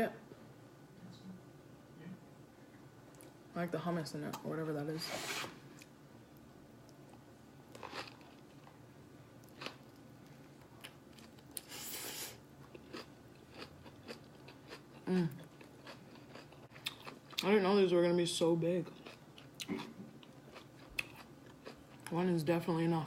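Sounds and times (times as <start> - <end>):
person chewing crunchy food: 7.7 - 8.8, 9.4 - 17.4, 18.8 - 22.1.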